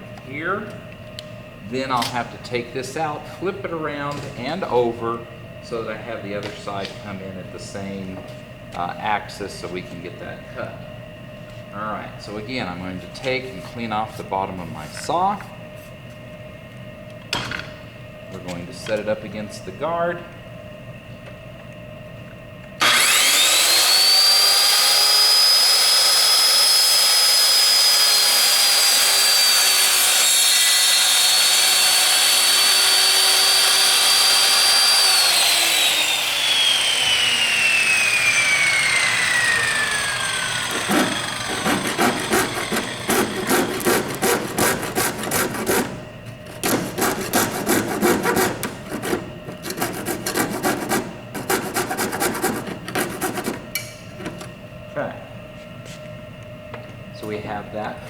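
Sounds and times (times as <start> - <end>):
electric saw cutting plastic: 22.8 - 53.7
scraping strokes on plastic: 40.7 - 54.5.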